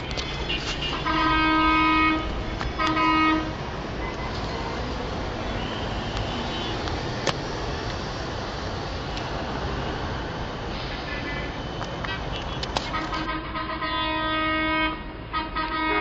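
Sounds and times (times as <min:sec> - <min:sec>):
city street noise: 0:00.0 - 0:16.0
horn blasts: 0:00.2 - 0:04.9, 0:11.2 - 0:16.0.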